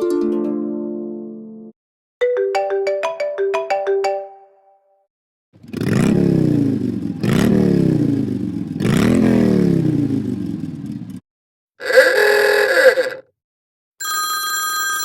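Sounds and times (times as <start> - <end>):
short steady ringtone: 14.0 - 15.0.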